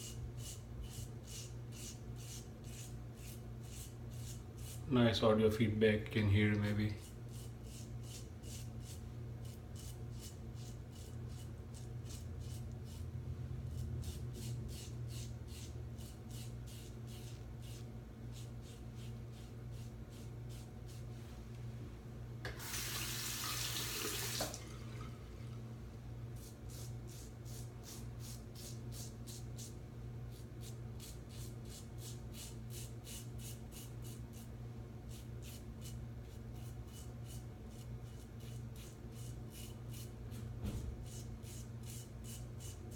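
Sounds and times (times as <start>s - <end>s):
steady low hum: 0.0s - 22.6s
tap running: 22.4s - 24.8s.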